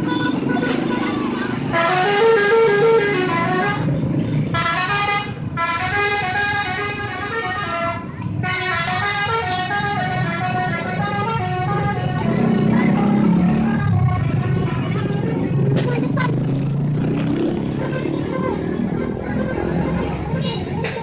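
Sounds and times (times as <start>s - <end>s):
musical bus horn: 0.0s - 15.6s.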